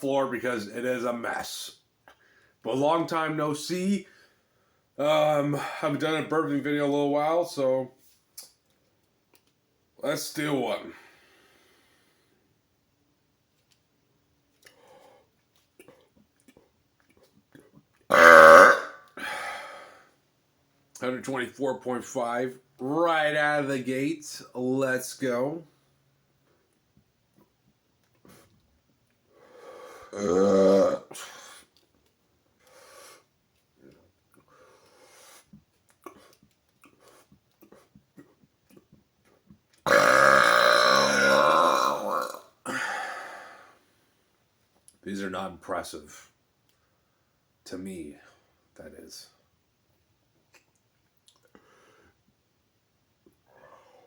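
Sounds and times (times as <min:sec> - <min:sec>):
man burping loudly: 0:18.1 - 0:19.4, 0:30.1 - 0:31.3, 0:39.9 - 0:42.9
small mouth clicks: 0:35.5 - 0:39.9, 0:50.5 - 0:51.6.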